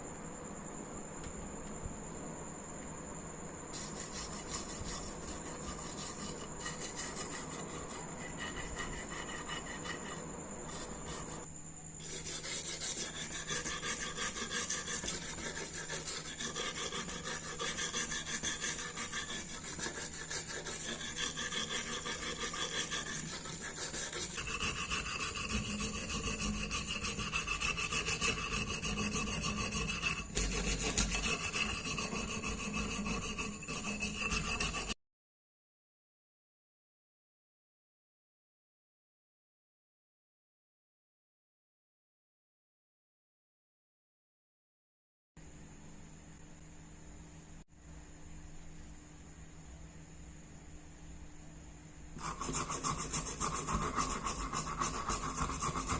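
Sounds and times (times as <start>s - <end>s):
abrasive scraping on rusty metal: 3.7s - 11.4s, 12.0s - 35.0s.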